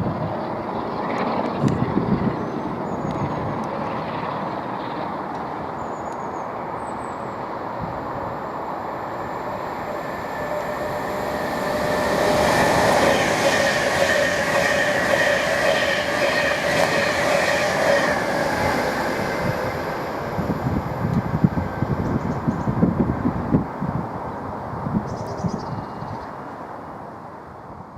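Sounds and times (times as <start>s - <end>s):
train passing: 0.0s - 25.5s
high whine: 7.4s - 23.7s.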